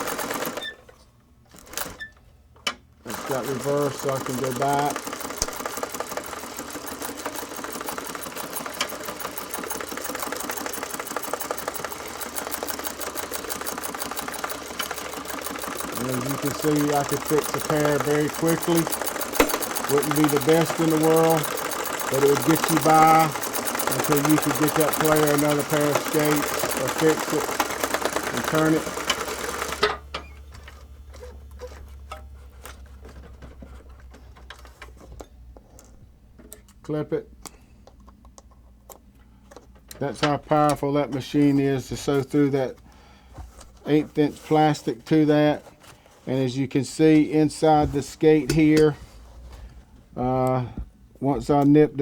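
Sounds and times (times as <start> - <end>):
sewing machine clunk: 0.0 - 0.8, 1.5 - 32.3
sewing machine stitching: 0.0 - 0.8, 1.5 - 2.1, 3.0 - 31.8
light mechanical clicks: 2.6 - 29.7.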